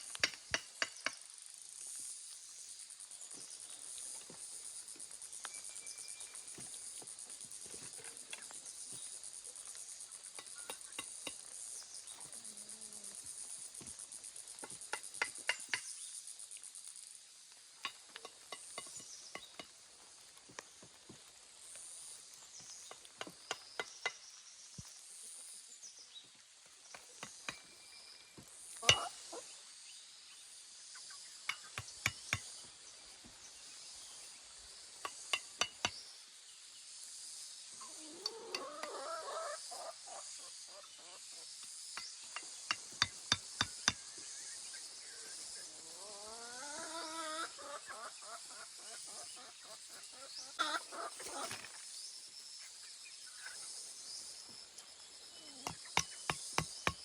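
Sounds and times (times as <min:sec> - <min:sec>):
high insect drone: 0:00.0 - 0:57.0
fowl calling: 0:46.0 - 0:51.6.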